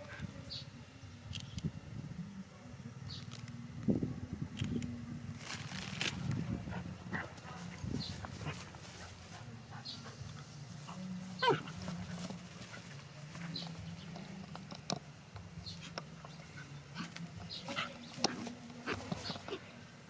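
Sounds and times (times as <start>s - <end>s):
steady low hum: 0.0s - 20.0s
pet animal crying: 11.4s - 11.8s.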